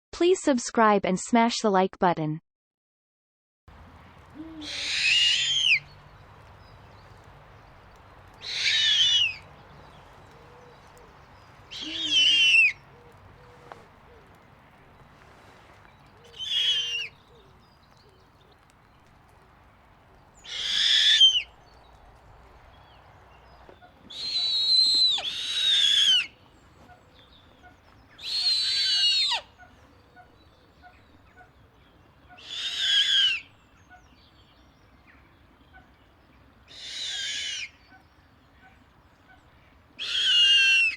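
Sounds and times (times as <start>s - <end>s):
owl giving shrill calls: 4.4s - 5.9s, 8.4s - 9.5s, 11.7s - 12.8s, 16.3s - 17.2s, 20.4s - 21.5s, 24.1s - 26.4s, 28.2s - 31.5s, 32.3s - 34.1s, 36.7s - 38.0s, 40.0s - 40.9s.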